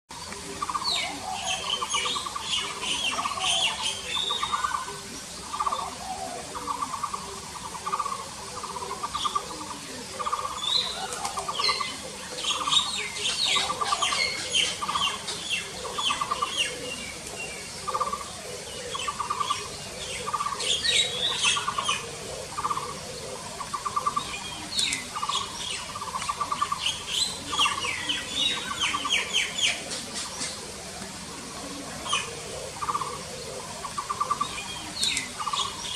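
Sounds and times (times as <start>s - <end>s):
small birds chirping and trilling: 0.1s - 35.9s.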